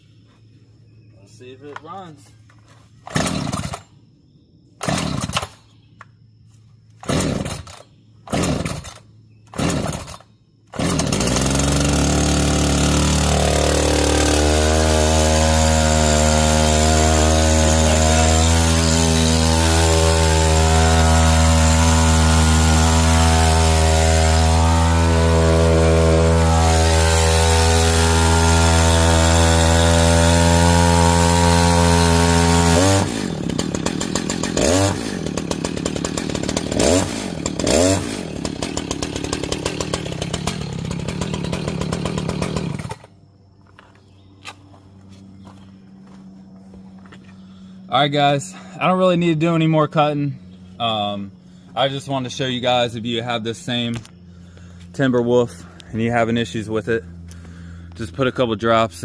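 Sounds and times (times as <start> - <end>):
chainsaw engine running: 3.0 - 3.9, 4.8 - 5.6, 7.0 - 43.2, 44.7 - 58.2
chainsaw starter cord cranking: 3.0 - 3.9, 4.8 - 5.7, 7.0 - 43.1.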